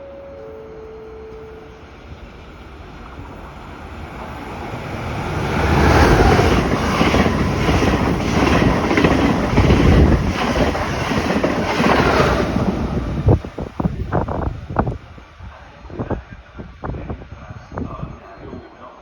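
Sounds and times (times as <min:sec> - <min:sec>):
train passing at speed: 0:00.0 - 0:19.0
wheels clattering on rail: 0:02.3 - 0:15.0.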